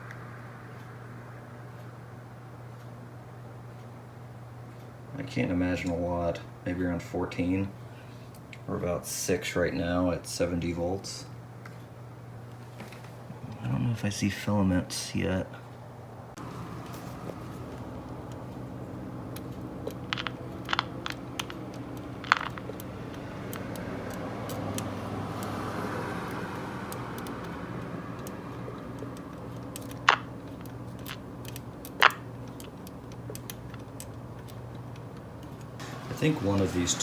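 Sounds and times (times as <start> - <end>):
low mains hum: 0.0 - 37.0
sharp clicks and taps from handling: 26.2 - 35.7.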